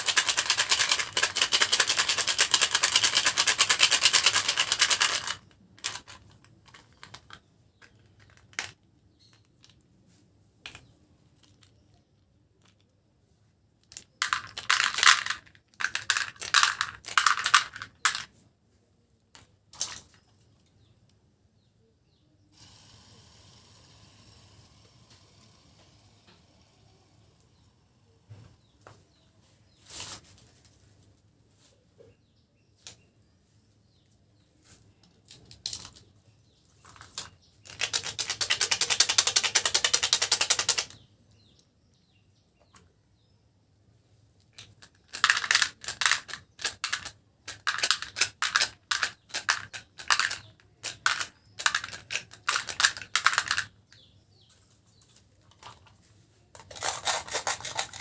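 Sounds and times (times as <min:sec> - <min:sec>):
candies clattering into containers: 0:00.0 - 0:09.9, 0:13.8 - 0:18.3, 0:19.4 - 0:20.6, 0:35.2 - 0:41.0, 0:44.5 - 0:54.1, 0:56.6 - 0:58.0.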